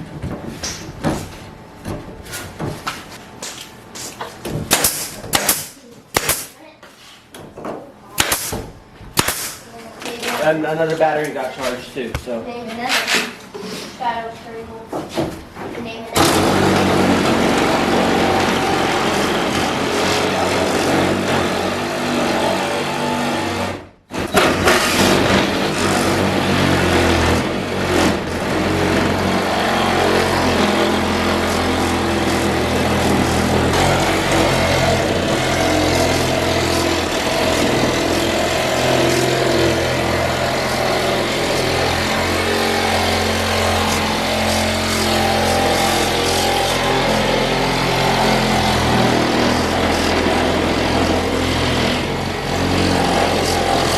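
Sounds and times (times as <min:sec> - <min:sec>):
engine running: 0:16.2 - 0:23.8, 0:24.4 - 0:53.9.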